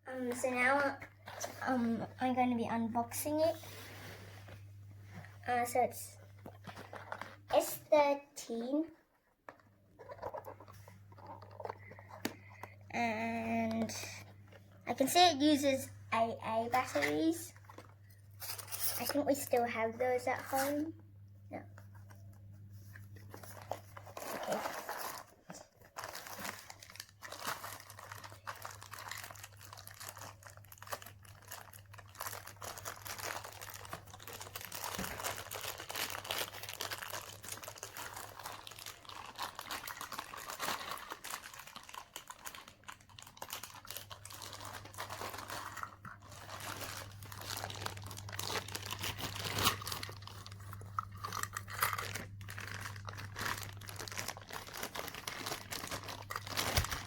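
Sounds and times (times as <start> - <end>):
plastic wrap and cardboard crinkling: 0.1 - 21.0, 21.6 - 57.0
small clicks and crunches: 23.1 - 57.0.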